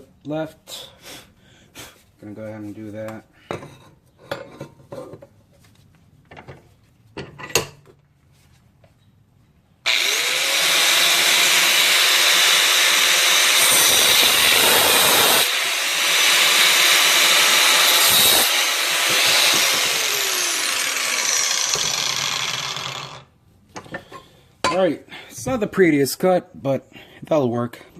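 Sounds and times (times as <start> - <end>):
power tool grinding metal pipe: 9.9 - 23.3.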